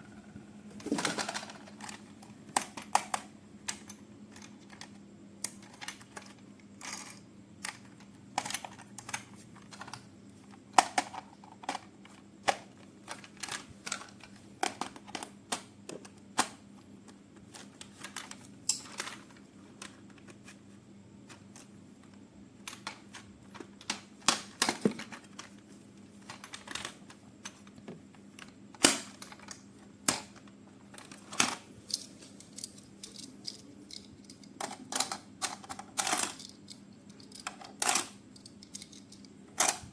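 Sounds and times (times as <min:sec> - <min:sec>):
faint steady hum: 0:00.0 - 0:39.9
clicks and taps of plastic parts: 0:00.8 - 0:20.4.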